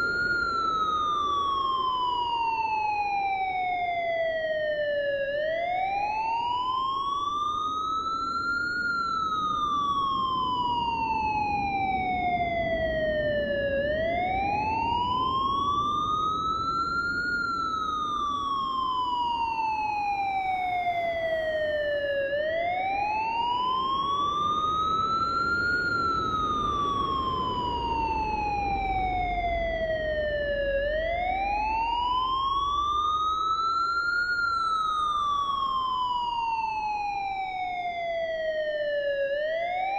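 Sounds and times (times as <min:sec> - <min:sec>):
siren wailing: 0:00.0 - 0:39.9
steady low noise: 0:26.2 - 0:32.9.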